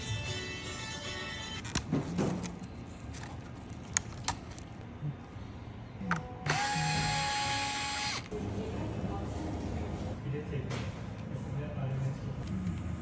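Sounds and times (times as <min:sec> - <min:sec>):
robot vacuum fan whine: 0:06.5 - 0:08.3.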